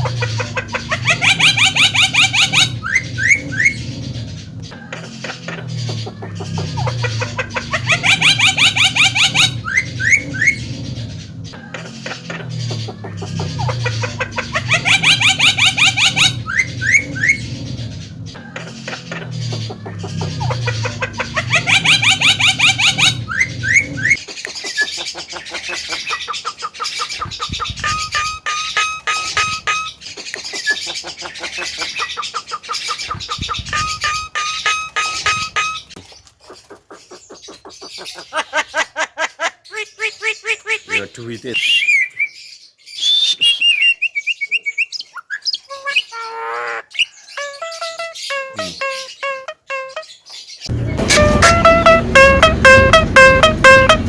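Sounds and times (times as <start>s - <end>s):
harsh buzzy bird call: 0.0s - 4.0s, 5.0s - 10.8s, 11.8s - 17.5s, 18.6s - 36.0s, 39.7s - 42.2s, 45.6s - 54.0s
myna whistles and chirps: 1.0s - 4.0s, 7.8s - 10.8s, 14.7s - 17.6s, 21.4s - 24.9s, 41.6s - 46.1s
low steady hum: 50.7s - 54.0s.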